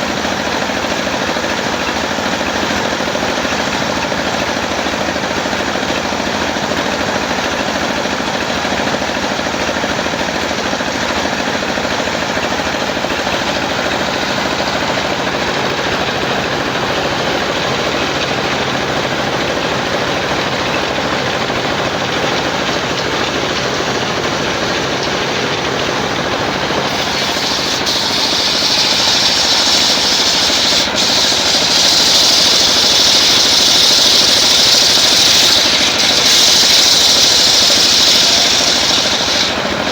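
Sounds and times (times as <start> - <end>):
sawmill engine running: 0.0 - 39.9
saw blade cutting log: 12.1 - 39.9.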